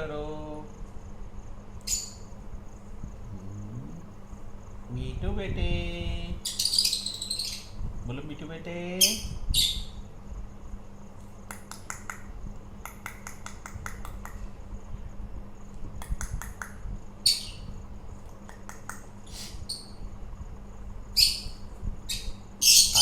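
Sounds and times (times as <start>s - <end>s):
parakeet harsh calls: 6.4s - 7.8s, 9.0s - 10.1s, 17.2s - 17.8s, 19.2s - 20.0s, 21.1s - 23.0s
parakeet clicking and chattering: 11.4s - 14.5s, 16.0s - 17.7s, 18.3s - 19.9s.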